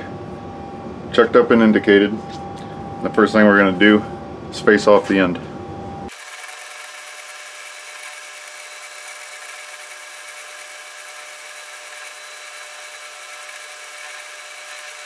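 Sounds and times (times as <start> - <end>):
lathe cutting steel: 6.1 - 15.0.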